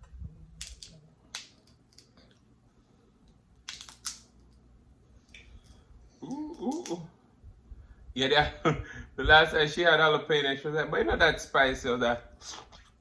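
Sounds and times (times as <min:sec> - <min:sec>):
eating clicks and crackles: 0:03.2 - 0:04.6, 0:05.3 - 0:07.1.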